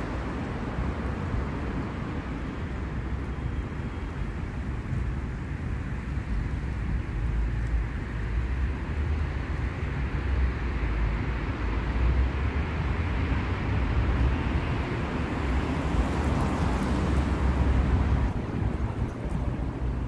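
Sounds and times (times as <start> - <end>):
low rumble of traffic: 0.0 - 20.0
vehicle passing: 8.5 - 20.0.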